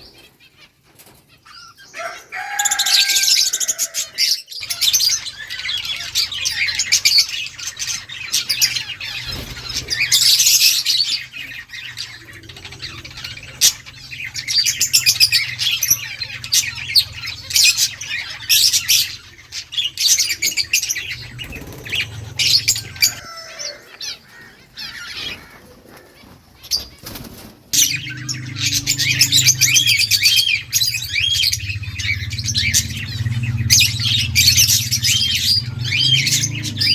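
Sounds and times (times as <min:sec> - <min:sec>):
parakeet chirping and squawking: 0:00.0 - 0:36.9.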